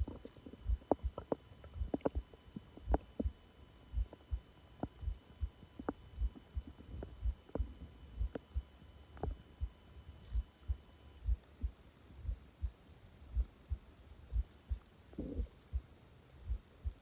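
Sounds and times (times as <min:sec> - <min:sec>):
stomach growling gurgles: 0:00.0 - 0:03.4, 0:15.1 - 0:15.6
soft low thuds: 0:02.8 - 0:08.4, 0:10.3 - 0:15.8.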